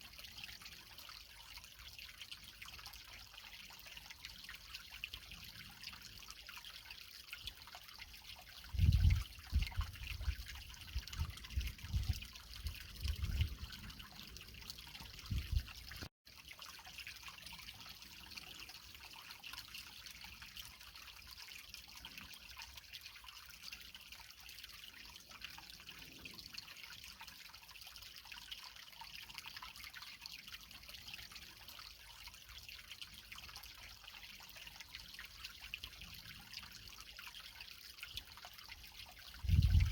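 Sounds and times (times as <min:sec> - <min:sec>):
creek water over rocks: 0:00.0 - 0:39.9.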